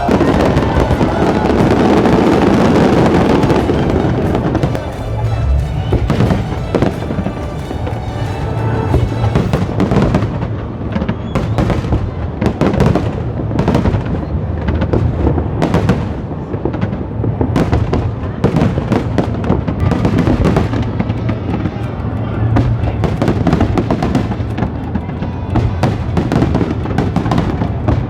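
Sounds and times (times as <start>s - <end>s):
music with steady bass: 0.0s - 10.0s
fireworks bangs and crackles: 0.0s - 28.0s.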